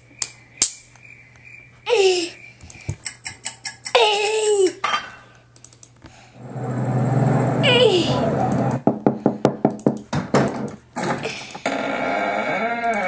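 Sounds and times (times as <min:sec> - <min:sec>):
quick clicks: 0:05.6 - 0:06.0.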